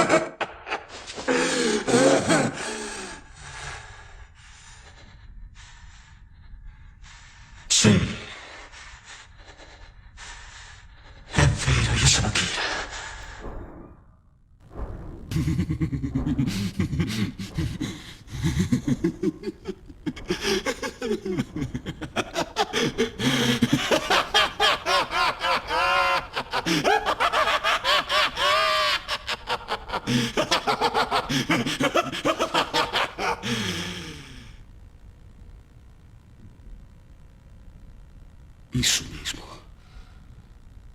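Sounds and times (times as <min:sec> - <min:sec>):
man laughing maniacally: 0:00.0 - 0:02.8, 0:15.3 - 0:34.4.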